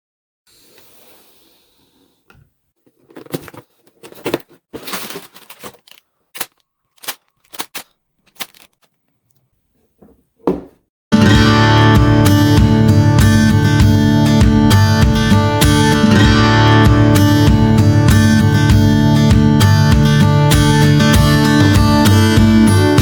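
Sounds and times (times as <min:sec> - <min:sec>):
plastic pieces clicking and rustling: 0:02.9 - 0:09.4
strummed acoustic guitar music: 0:11.1 - 0:23.0.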